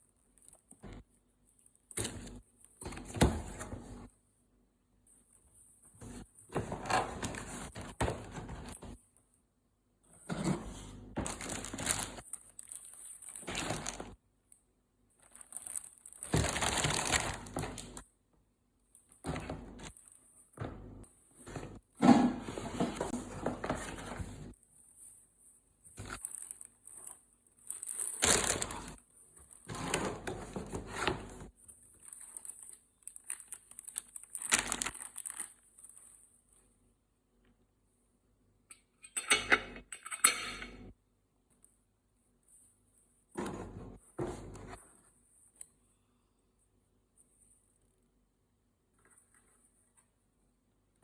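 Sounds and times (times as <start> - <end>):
packaging crinkling and tearing: 11.2 - 14.2, 15.2 - 17.9, 26.0 - 30.1, 31.9 - 36.2.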